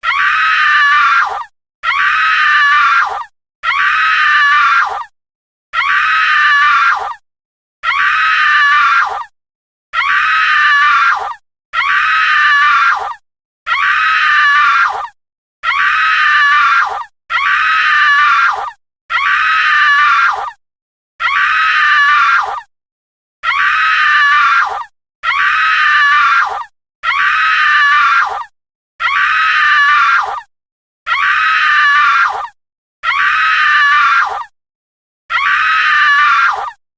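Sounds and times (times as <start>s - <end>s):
woman screaming: 0.0s - 5.1s, 5.8s - 7.2s, 7.8s - 9.3s, 10.0s - 20.6s, 21.2s - 22.7s, 23.4s - 30.5s, 31.1s - 34.6s, 35.3s - 36.8s.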